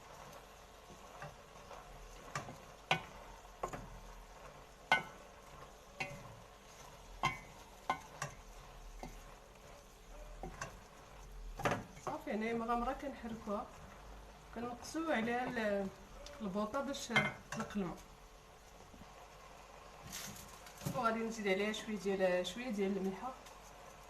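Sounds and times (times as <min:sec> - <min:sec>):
utensil scraping against a pot: 0:00.0 - 0:14.2
food sizzling in oil: 0:00.0 - 0:24.0.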